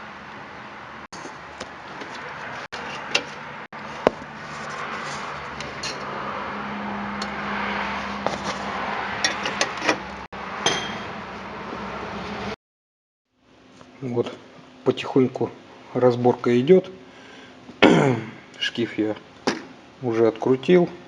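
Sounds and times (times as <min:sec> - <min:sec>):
metal tools clinking on engine parts: 0:05.6 - 0:06.1.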